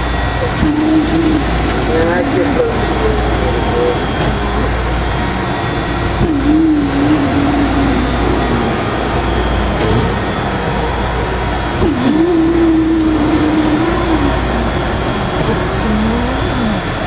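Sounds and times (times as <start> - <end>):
electric percussor buzzing: 3.7 - 10.6, 11.8 - 17.0.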